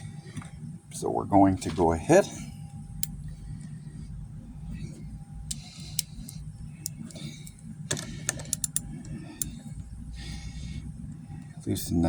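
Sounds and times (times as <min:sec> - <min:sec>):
steady low hum: 0:00.0 - 0:12.0
metal tools clicking: 0:05.5 - 0:09.7.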